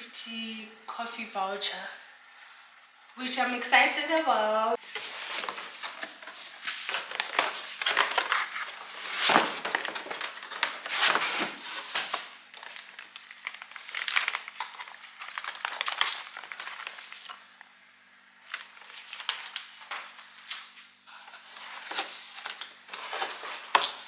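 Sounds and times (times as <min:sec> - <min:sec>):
cardboard scraping: 0:04.8 - 0:12.2
packaging crinkling and rustling: 0:04.8 - 0:17.7, 0:18.4 - 0:24.0.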